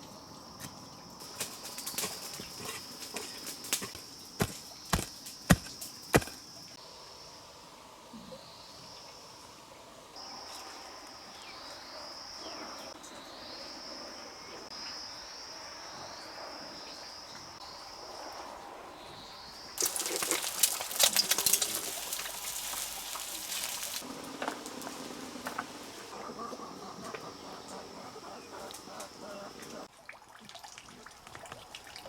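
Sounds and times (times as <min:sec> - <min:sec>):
high insect-like trill: 0:19.8 - 0:24.0
loud crackling and rustling: 0:19.8 - 0:25.1.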